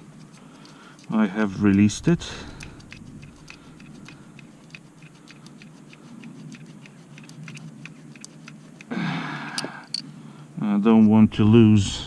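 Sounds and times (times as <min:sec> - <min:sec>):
small metal parts clicking: 0:00.0 - 0:08.9, 0:09.5 - 0:10.1
low steady hum: 0:00.0 - 0:12.0.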